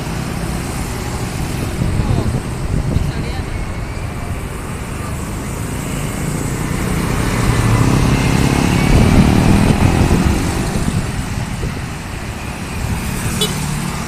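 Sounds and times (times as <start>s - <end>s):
road traffic: 0.0s - 14.0s
vehicle engine passing by: 4.5s - 14.0s.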